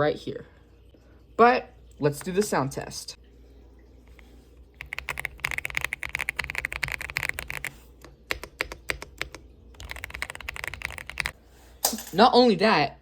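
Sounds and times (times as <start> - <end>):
mechanical keyboard typing: 4.8 - 11.4.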